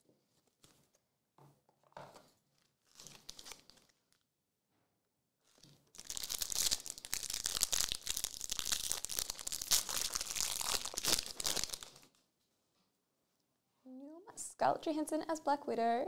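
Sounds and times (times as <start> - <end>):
wrapper tearing and crinkling: 2.8 - 4.2, 5.9 - 12.1.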